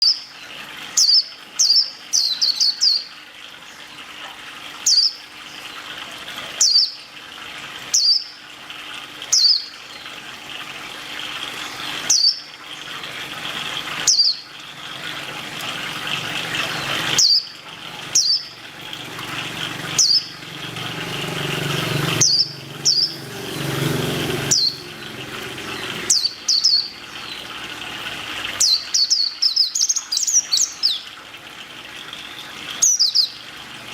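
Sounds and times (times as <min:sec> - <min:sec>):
bird chirping: 0:01.0 - 0:03.1, 0:16.7 - 0:18.5, 0:20.0 - 0:20.4, 0:22.2 - 0:23.2, 0:24.5 - 0:27.4, 0:28.6 - 0:31.1, 0:32.2 - 0:33.4.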